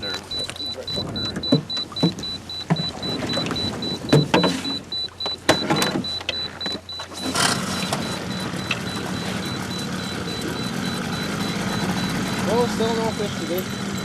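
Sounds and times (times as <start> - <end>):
outboard motor idling: 0.0 - 14.0
knocks and rattles in boat: 0.9 - 10.1.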